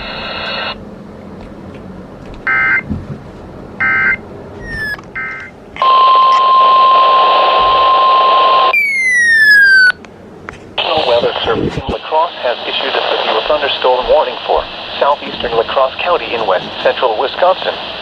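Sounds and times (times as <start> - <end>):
radio hiss: 0.0 - 0.8, 5.8 - 8.7, 10.8 - 18.0
steady warning alarm tone: 2.4 - 2.9, 3.8 - 10.0
data tone bursts: 3.8 - 10.0.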